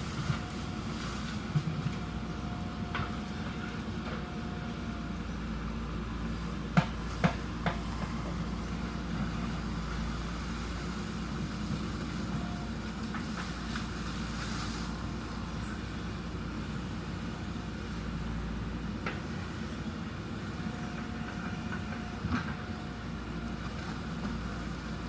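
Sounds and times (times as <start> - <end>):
backhoe diesel engine running: 0.0 - 25.0.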